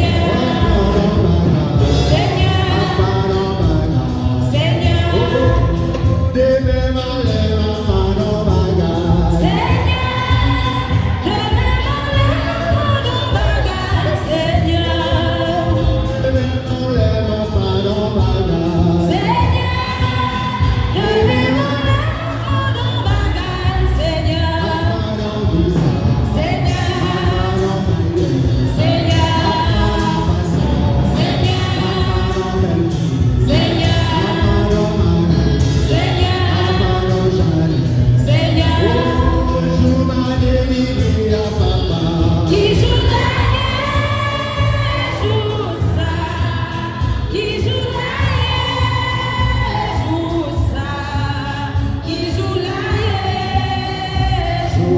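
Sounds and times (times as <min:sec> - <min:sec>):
instrumental accompaniment with bass beat: 0:00.0 - 0:54.9
voices singing a hymn: 0:17.5 - 0:54.9.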